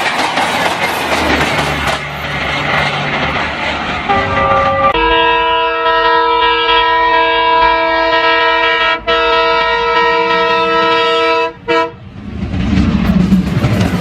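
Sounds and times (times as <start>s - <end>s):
train passing rumble: 0.0s - 14.0s
locomotive horn blast: 4.1s - 12.0s.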